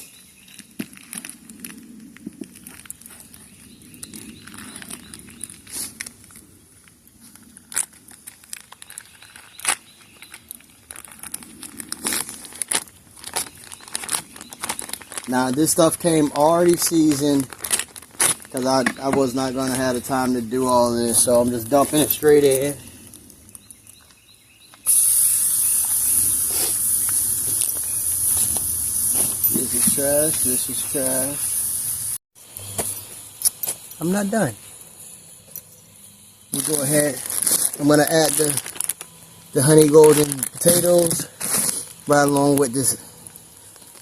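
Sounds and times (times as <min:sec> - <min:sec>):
meat sizzling in a pot: 0:24.9 - 0:32.2.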